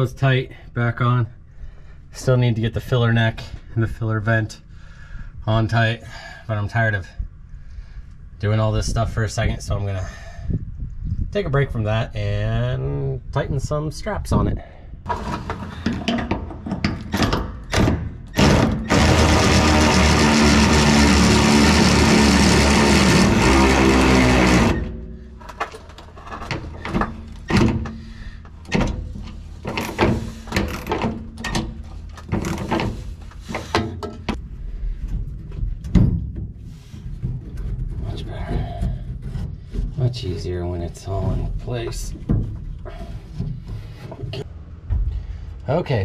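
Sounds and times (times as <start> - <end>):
hand tools clicking and clanking: 15.1 - 19.8
power tool running: 18.3 - 25.3.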